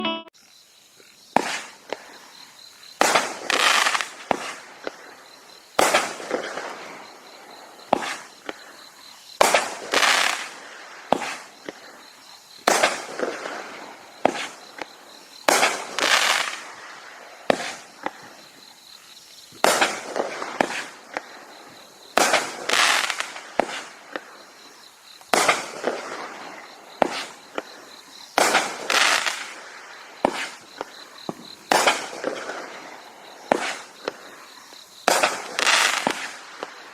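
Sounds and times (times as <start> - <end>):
fireworks bangs: 1.3 - 2.3, 2.9 - 18.8, 19.5 - 36.9
fireworks crackling: 1.3 - 36.9.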